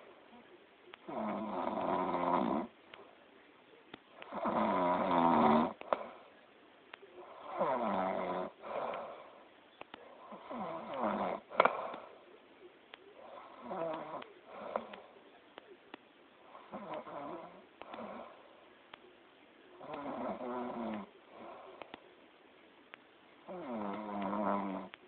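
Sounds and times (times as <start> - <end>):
quiet breathing: 0.0 - 25.0
person snoring loudly: 4.3 - 5.8, 19.8 - 21.1.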